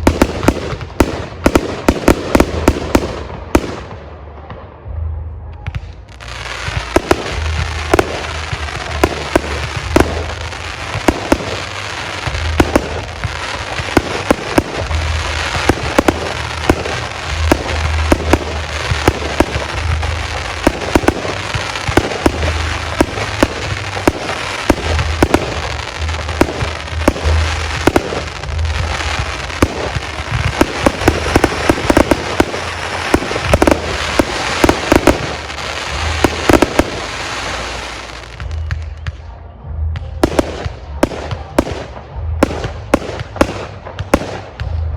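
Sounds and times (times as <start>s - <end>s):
crackling hiss: 5.8s - 39.3s.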